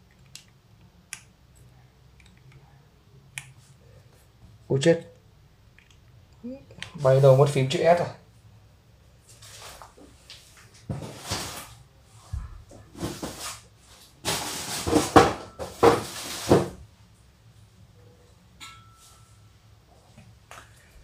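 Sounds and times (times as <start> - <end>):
rummaging objects on a desk: 9.3 - 16.8.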